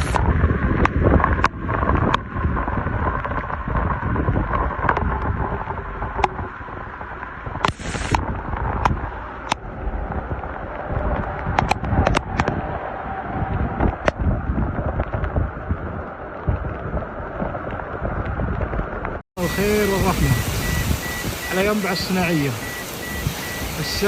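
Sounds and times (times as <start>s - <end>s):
wind buffeting microphone: 0.0s - 24.0s
heavy rain: 7.6s - 11.8s, 19.4s - 24.0s.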